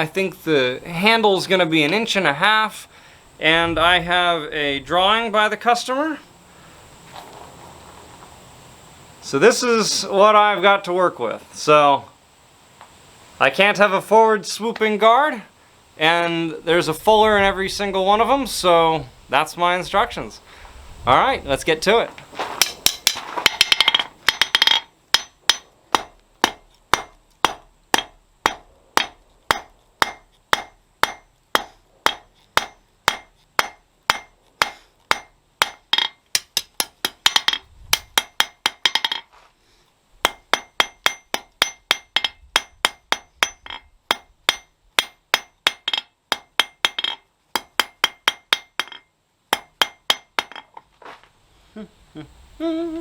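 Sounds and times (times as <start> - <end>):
hammer striking steel on anvil: 22.6 - 39.3, 40.2 - 50.7.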